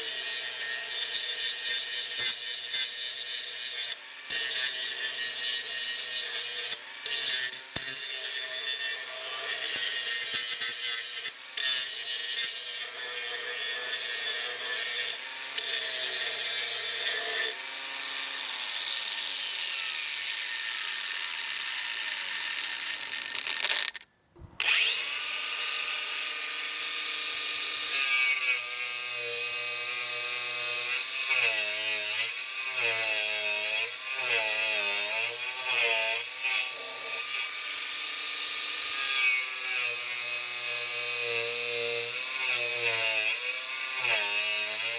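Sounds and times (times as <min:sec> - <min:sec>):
angle grinder running under load: 0:11.8 - 0:24.0, 0:24.6 - 0:44.9.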